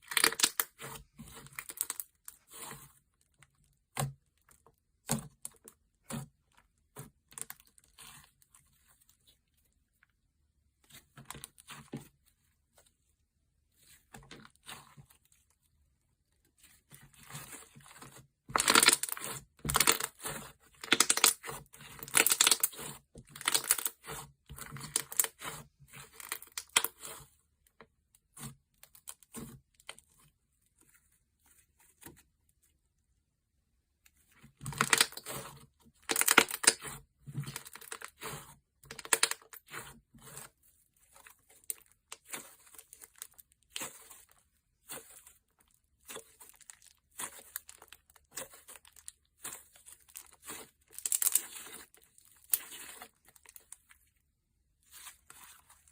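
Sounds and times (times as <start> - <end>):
slime crackling and popping: 0.0 - 2.8, 18.0 - 27.2, 34.6 - 39.9, 41.6 - 54.0.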